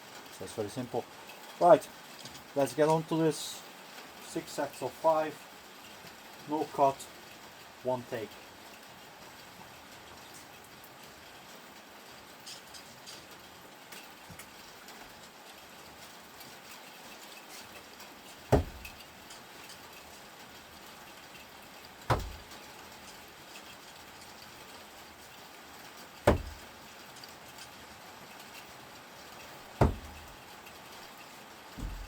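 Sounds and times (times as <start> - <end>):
screwdrivers thudding into target: 18.5 - 19.0, 22.1 - 22.5, 26.3 - 26.7, 29.8 - 30.3, 31.8 - 32.0.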